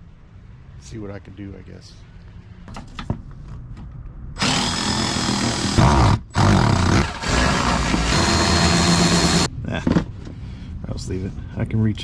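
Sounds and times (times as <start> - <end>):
cordless power drill running: 4.4 - 9.5.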